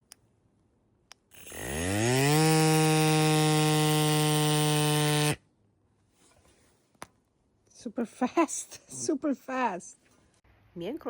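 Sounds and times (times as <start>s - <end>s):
air compressor motor buzzing hum: 1.4s - 5.4s.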